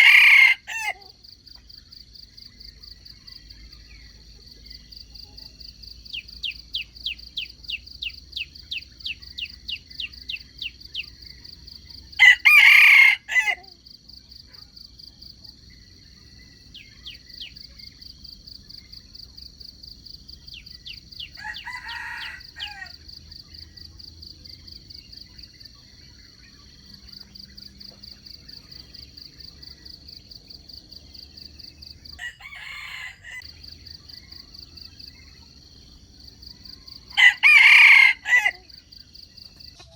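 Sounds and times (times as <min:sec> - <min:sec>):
rooster crowing: 0:00.0 - 0:01.1, 0:12.2 - 0:13.7, 0:21.4 - 0:23.0, 0:32.2 - 0:33.5, 0:37.0 - 0:38.7.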